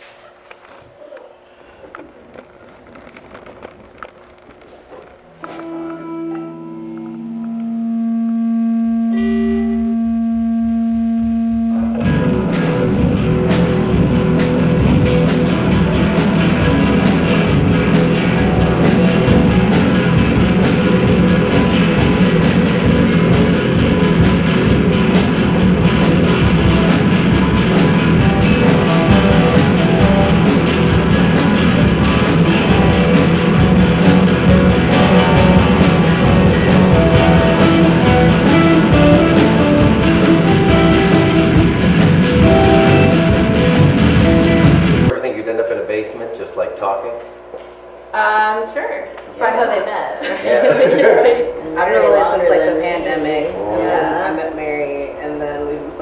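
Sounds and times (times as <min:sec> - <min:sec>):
live rock band playing: 0:05.4 - 0:08.2, 0:08.8 - 0:45.1.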